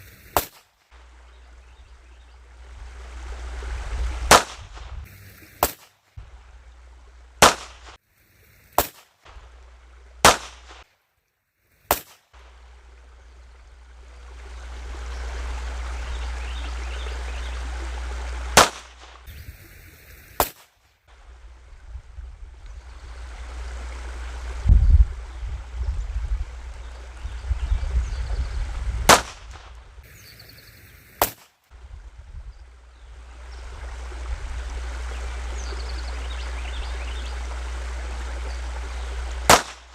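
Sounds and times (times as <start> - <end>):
steady low rumble: 0.0 - 10.8, 12.4 - 20.4, 21.0 - 39.9
gunshots: 4.3 - 4.9, 5.6 - 5.9, 7.4 - 8.0, 8.8 - 9.1, 10.2 - 10.8, 11.9 - 12.2, 18.6 - 19.2, 20.4 - 20.7, 29.1 - 29.8, 39.5 - 39.9.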